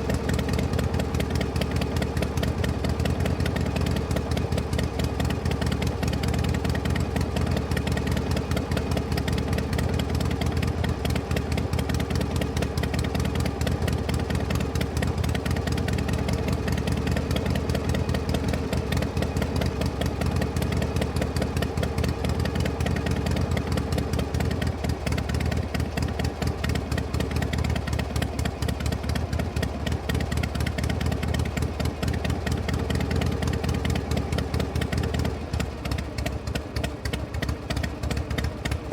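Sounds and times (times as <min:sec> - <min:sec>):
vehicle engine idling: 0:00.0 - 0:38.9.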